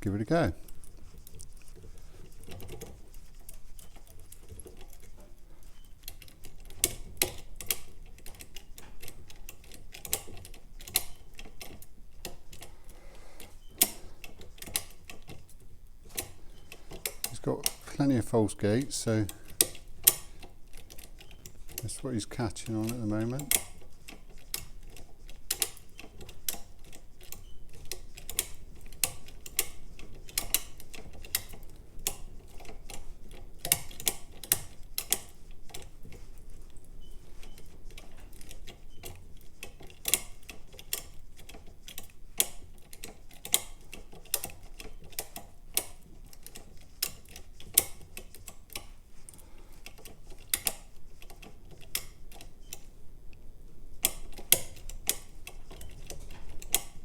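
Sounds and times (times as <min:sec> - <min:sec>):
lock picking metallic clicks: 0:06.0 - 0:12.7, 0:19.2 - 0:21.9, 0:37.4 - 0:48.9, 0:54.0 - 0:57.0.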